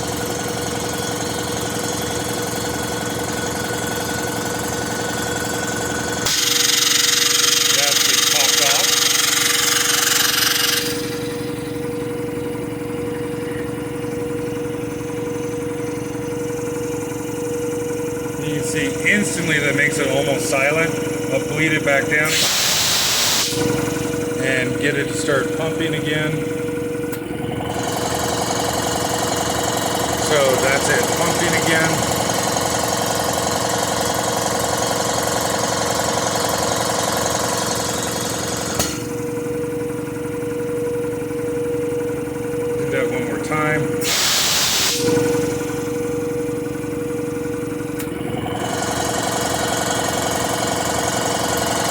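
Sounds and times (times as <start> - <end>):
compressor pump humming: 0.0 - 51.9
air hissing from valve: 22.2 - 23.7, 44.0 - 45.4
sharp pop of valve venting: 38.7 - 39.1.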